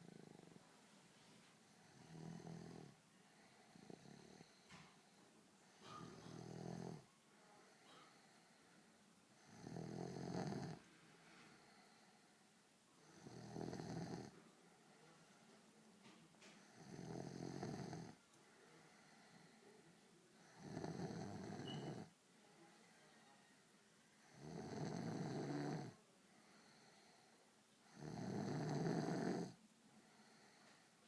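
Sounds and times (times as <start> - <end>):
quiet breaths: 0.0 - 31.0
person snoring: 1.8 - 2.9, 9.4 - 10.8, 13.1 - 14.3, 16.7 - 18.2, 20.4 - 22.1, 27.9 - 29.6.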